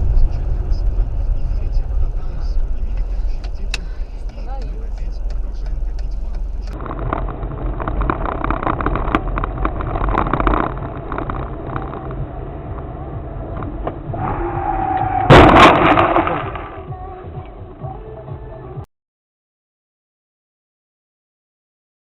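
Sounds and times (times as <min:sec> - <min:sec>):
car road noise: 0:00.0 - 0:18.8
vehicle collision crash: 0:13.9 - 0:16.9.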